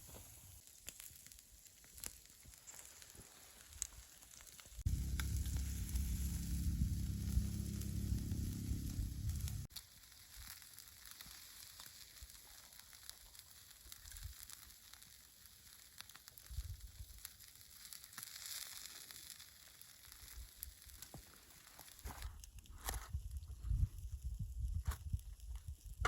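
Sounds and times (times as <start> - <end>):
sizzling hiss with crackles: 0.0 - 26.0
low rumble: 4.8 - 9.7
soft low thumps: 4.9 - 9.7.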